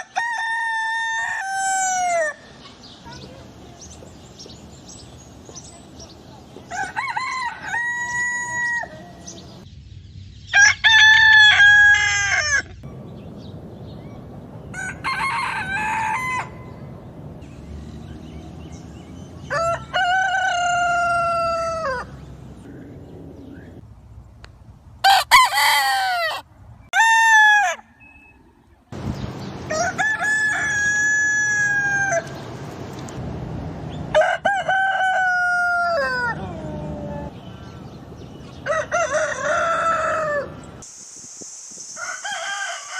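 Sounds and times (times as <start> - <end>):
roosters crowing: 0.0 - 2.6, 6.6 - 9.6, 10.5 - 12.8, 14.6 - 16.9, 18.3 - 22.3, 25.0 - 28.1, 29.6 - 32.6, 34.0 - 40.8, 42.0 - 42.9.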